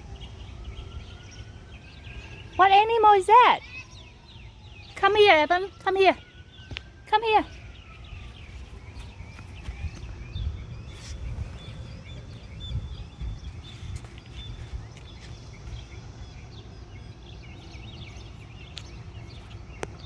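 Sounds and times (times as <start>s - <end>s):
small birds chirping: 0.0s - 20.0s
steady low rumble: 7.6s - 20.0s.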